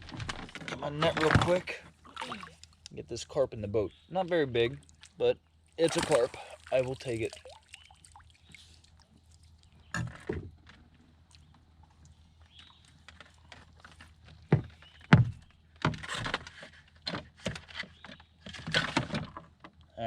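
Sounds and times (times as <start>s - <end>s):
hollow thumps on canoe hull: 14.5s - 19.5s.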